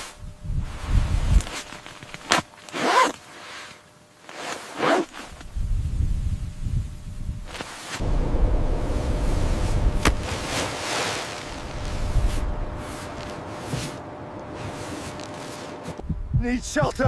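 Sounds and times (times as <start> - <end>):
zip-like rasps: 2.3 - 5.4
wind buffeting microphone: 5.4 - 13.3, 16.0 - 17.0.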